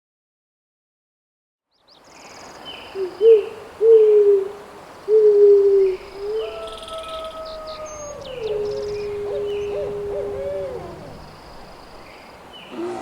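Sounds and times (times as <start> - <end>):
insects: 4.5 - 13.0
owl hooting: 5.1 - 12.1.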